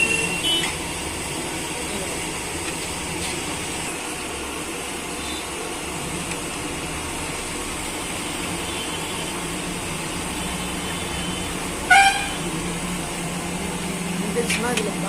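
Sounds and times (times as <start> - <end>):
cooking stall hissing and rumbling: 0.0 - 15.0
short high-pitched sound: 11.9 - 12.4.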